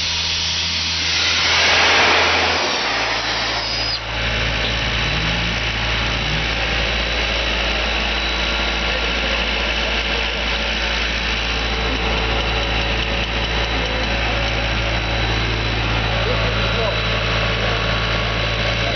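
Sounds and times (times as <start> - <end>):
broad hiss: 0.0 - 4.7
loader engine running: 0.0 - 18.9.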